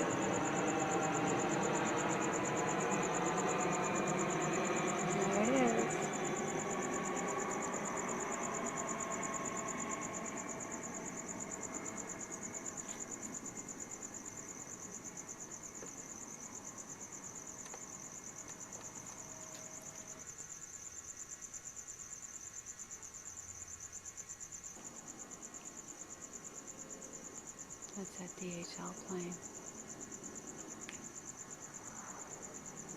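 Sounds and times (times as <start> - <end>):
jet engine rumble: 0.0 - 14.1
crickets chirping: 0.0 - 32.9.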